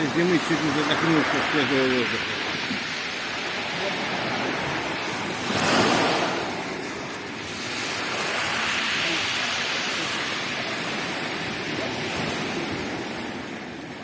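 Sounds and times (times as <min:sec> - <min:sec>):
waves washing onto shore: 0:00.0 - 0:14.0.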